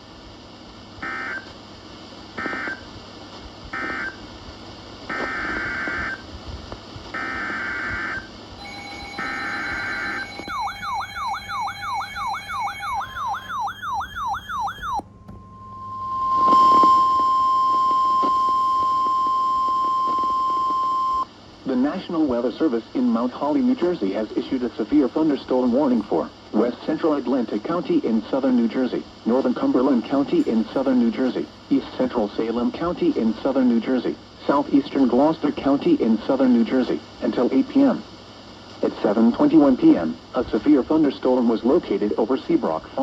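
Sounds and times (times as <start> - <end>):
buzzy data bursts: 7.2 - 15.0
loud steady alert tone: 8.1 - 17.5
rapid warbling siren sweep: 8.6 - 15.0.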